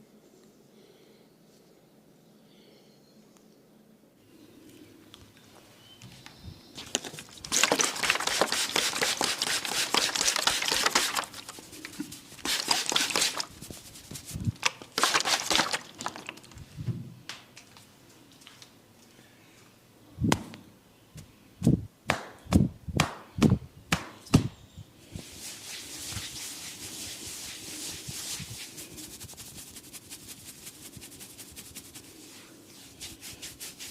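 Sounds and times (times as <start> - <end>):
hair and scalp rubbing: 7.5 - 15.8, 25.2 - 33.9
sharp slaps: 20.3 - 20.6, 22.1 - 24.6.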